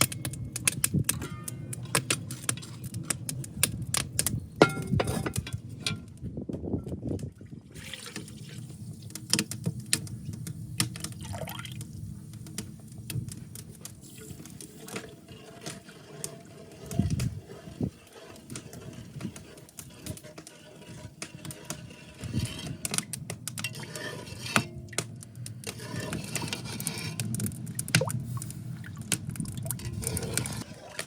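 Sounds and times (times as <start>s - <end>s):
liquid pouring and splashing: 7.4s - 8.8s, 11.2s - 11.8s.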